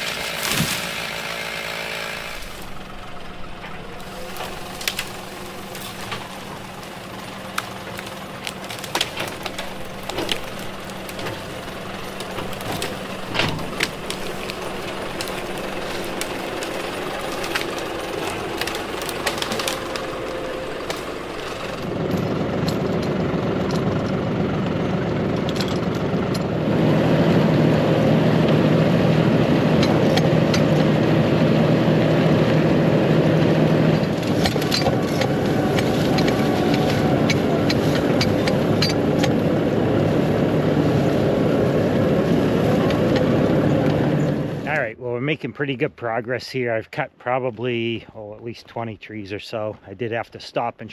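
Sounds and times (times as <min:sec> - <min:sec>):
sharp knocks and cracks: 0:00.0 - 0:23.9, 0:33.9 - 0:39.4
engine running: 0:00.0 - 0:45.0.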